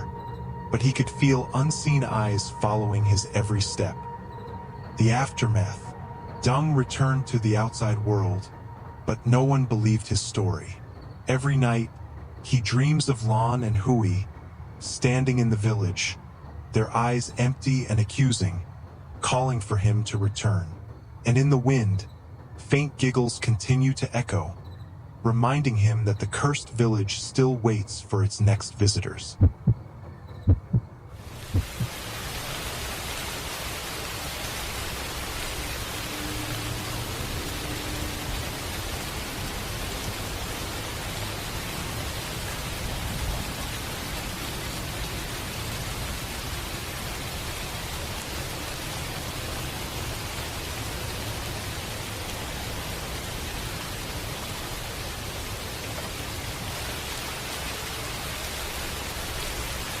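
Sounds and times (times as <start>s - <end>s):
rain falling: 0.0s - 60.0s
low thumps: 29.4s - 32.0s.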